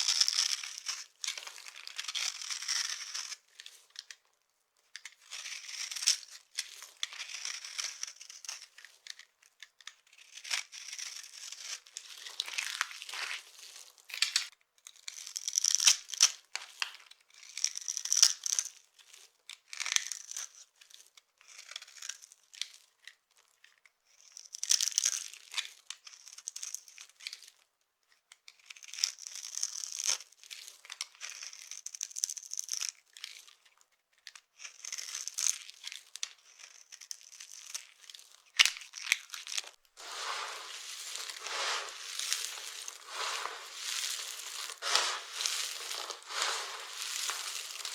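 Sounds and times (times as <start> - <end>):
dry soap crunching: 10.9 - 14.5, 40.0 - 47.9.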